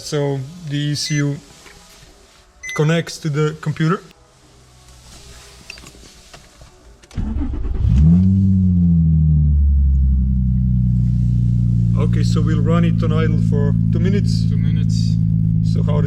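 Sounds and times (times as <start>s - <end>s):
car engine cranking: 7.0s - 12.4s
car engine loud idle: 9.4s - 16.0s.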